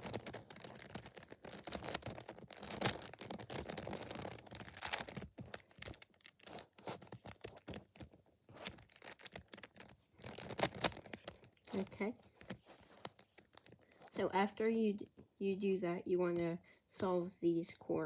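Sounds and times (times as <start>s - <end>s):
puzzle cube clicking and scraping: 0.0s - 14.2s.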